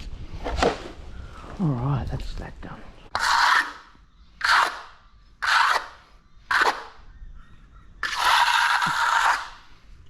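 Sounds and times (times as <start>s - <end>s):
hand tool scraping concrete: 3.1s - 6.9s, 8.0s - 9.6s.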